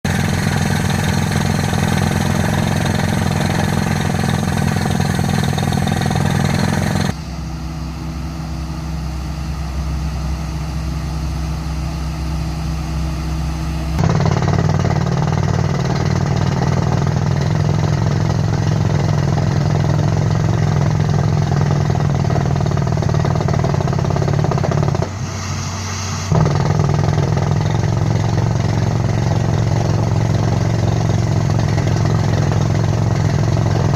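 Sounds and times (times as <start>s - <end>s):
rock drilling machine: 0.1s - 7.1s, 14.0s - 25.2s, 26.3s - 33.9s.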